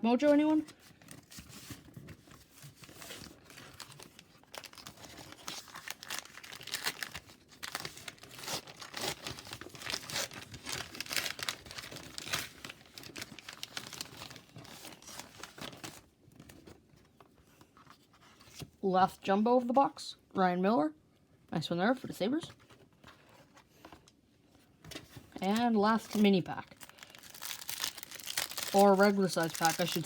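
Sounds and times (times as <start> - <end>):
plastic wrapper crinkling and tearing: 0.8 - 16.7, 25.4 - 30.0.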